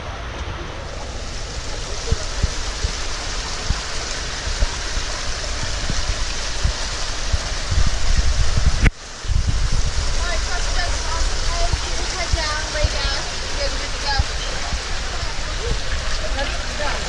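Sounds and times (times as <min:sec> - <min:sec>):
running water rushing: 0:00.0 - 0:17.0.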